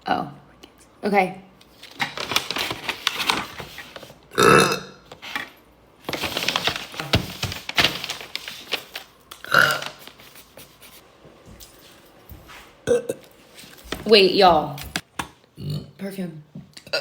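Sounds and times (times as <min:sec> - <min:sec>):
woman burping: 0:04.4 - 0:05.0, 0:12.8 - 0:13.2
rustling: 0:06.0 - 0:12.7.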